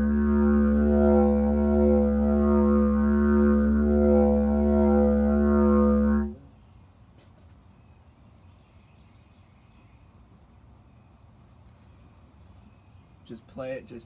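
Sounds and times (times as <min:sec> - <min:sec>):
didgeridoo drone: 0:00.0 - 0:06.4.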